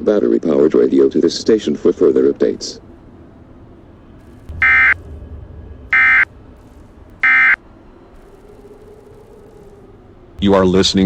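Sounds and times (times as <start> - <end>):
digital data tone bursts: 4.3 - 5.1, 5.9 - 7.6.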